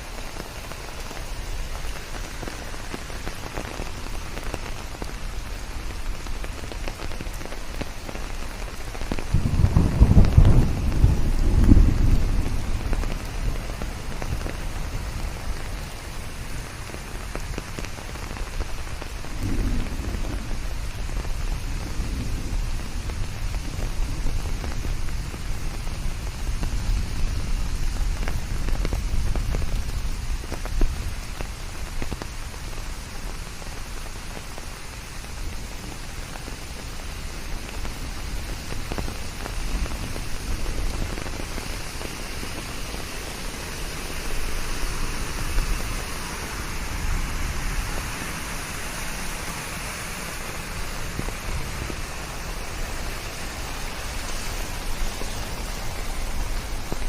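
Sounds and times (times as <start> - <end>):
rain falling: 0.0 - 57.0
white noise hiss: 0.0 - 57.0
thunder rumbling: 8.8 - 31.8.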